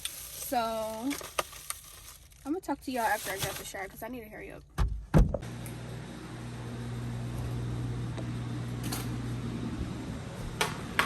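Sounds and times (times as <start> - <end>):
low mechanical hum: 5.3 - 11.0.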